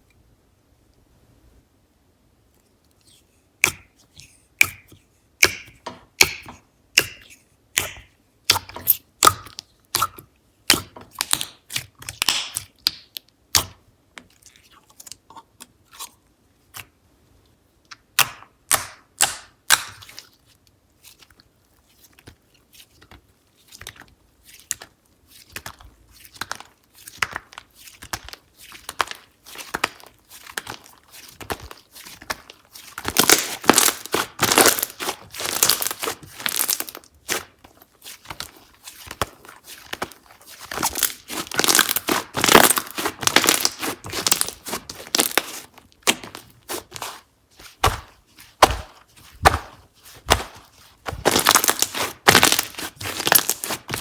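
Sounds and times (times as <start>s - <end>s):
slime sticky pops and clicks: 7.8s - 13.8s, 17.9s - 20.0s
soft slime crackling: 20.0s - 54.0s.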